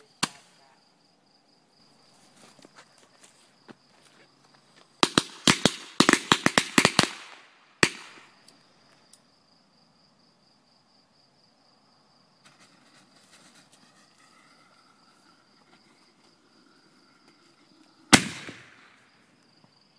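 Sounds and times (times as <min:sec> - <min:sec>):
crickets chirring: 0:00.0 - 0:19.9
fireworks bangs: 0:05.0 - 0:08.4, 0:14.0 - 0:19.3.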